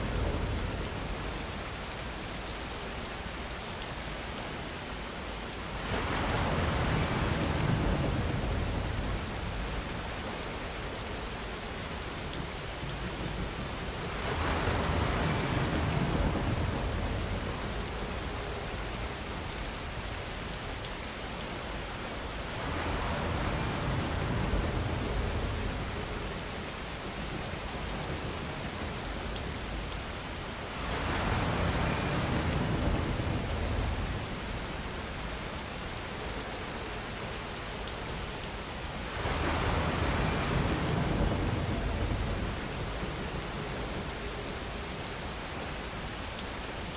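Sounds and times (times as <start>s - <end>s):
steady rain falling: 0.0s - 46.9s.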